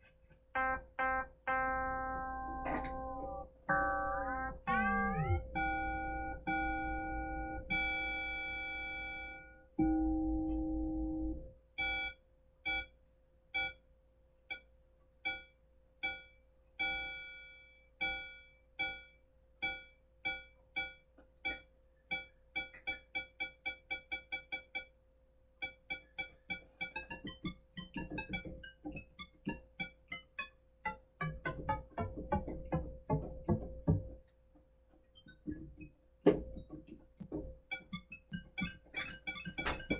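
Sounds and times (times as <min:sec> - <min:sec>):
synthesizer plucked notes: 0:00.6 - 0:08.6, 0:26.0 - 0:34.3, 0:35.2 - 0:39.9
held synthesizer tone: 0:03.7 - 0:07.0.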